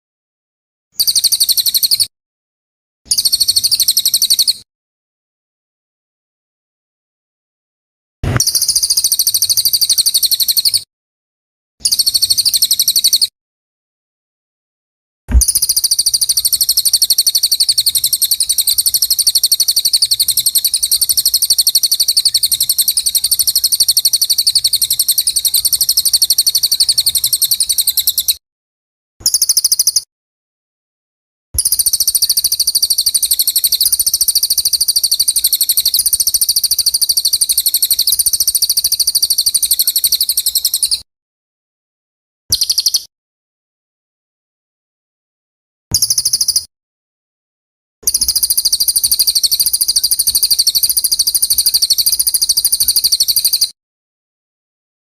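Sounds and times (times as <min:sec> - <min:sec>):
songbird rapid trilling chatter: 0:48.1 - 0:53.7.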